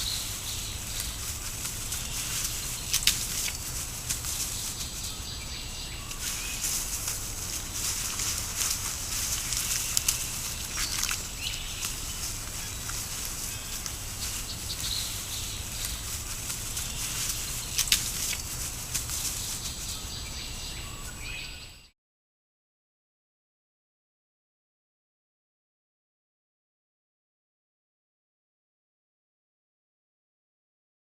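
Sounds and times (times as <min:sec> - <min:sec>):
rustling in leaf litter: 0:00.0 - 0:21.7
microphone hiss: 0:00.0 - 0:21.8
sticks clicking and snapping: 0:17.2 - 0:18.5.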